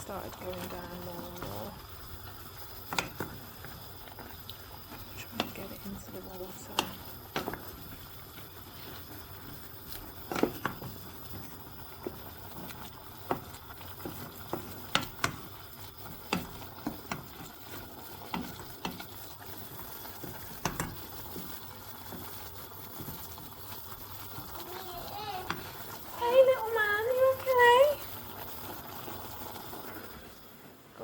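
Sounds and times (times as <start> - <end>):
hiss from cooking pot: 0.0 - 31.0
spoon knocking against pot: 20.3 - 21.5.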